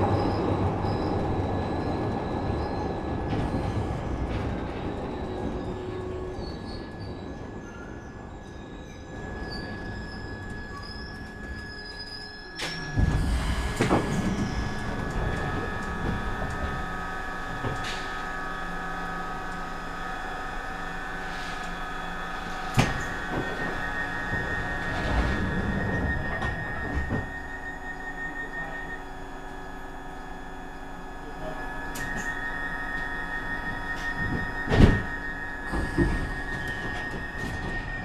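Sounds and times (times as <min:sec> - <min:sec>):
subway train rumbling: 0:00.0 - 0:38.0
high wheel squeal: 0:04.9 - 0:18.5, 0:32.0 - 0:38.0.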